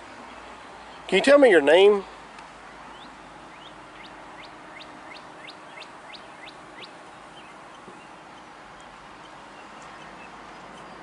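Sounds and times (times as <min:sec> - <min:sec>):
steady outdoor hiss: 0:00.0 - 0:11.0
small bird chirping: 0:02.9 - 0:11.0.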